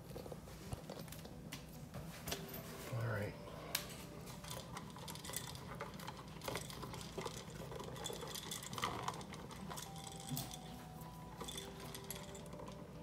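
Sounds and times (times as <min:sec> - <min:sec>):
tools and wires rattling: 0:03.9 - 0:13.0.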